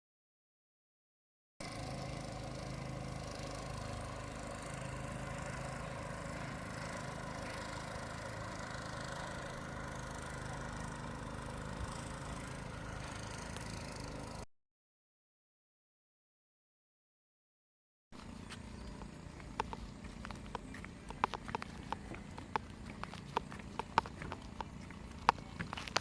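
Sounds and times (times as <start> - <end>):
engine running: 1.6 - 14.5, 18.2 - 26.0.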